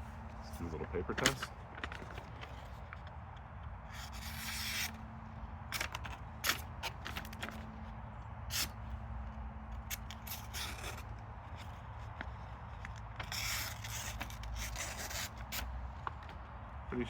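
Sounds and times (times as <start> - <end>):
paper crackling: 0.4 - 3.0
knife slicing paper: 9.9 - 11.1, 13.2 - 15.7.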